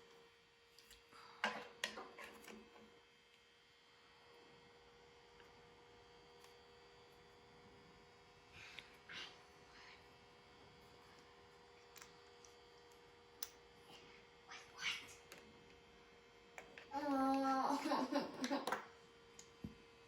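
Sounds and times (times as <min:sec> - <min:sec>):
low electrical hum: 0:00.0 - 0:20.0.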